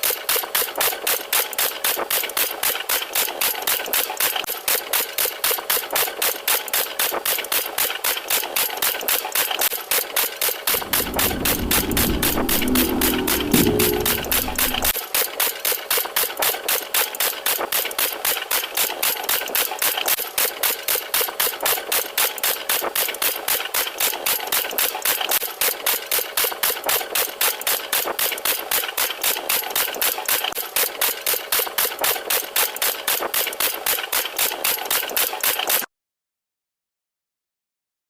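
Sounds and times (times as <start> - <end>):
rapid even pounding: 10.7 - 14.9.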